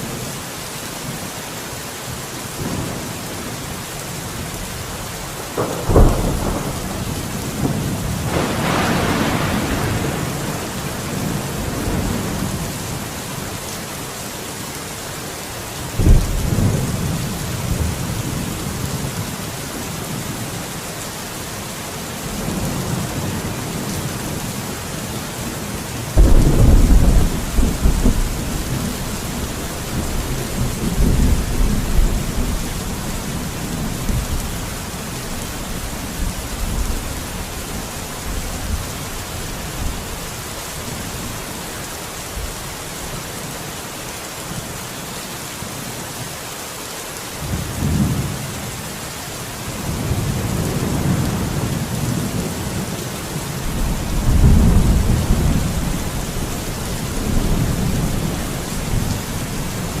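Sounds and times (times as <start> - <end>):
rain hissing: 0.0 - 46.3, 47.3 - 60.0
rolling thunder rumble: 5.4 - 12.8, 26.1 - 40.0, 53.6 - 60.0
thunder cracks: 5.6 - 12.3, 26.2 - 33.0.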